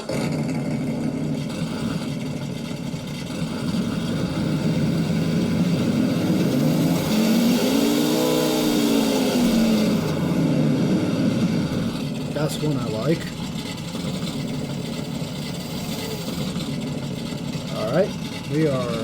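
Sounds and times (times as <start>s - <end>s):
simulated engine idling and revving: 0.0s - 19.0s.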